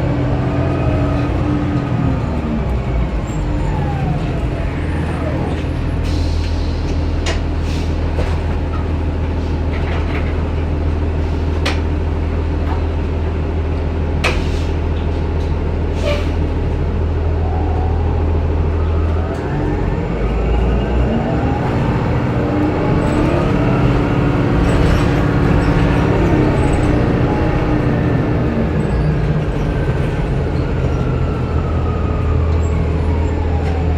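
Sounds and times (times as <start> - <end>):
bus diesel engine drone: 0.0 - 33.9.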